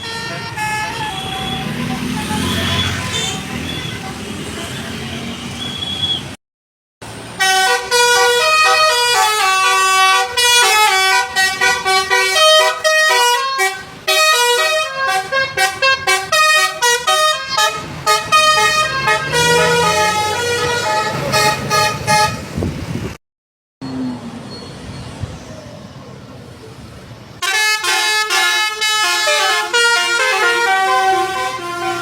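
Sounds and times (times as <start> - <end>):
bus horn playing a melody: 0.0 - 4.3, 7.4 - 22.6, 27.4 - 32.0.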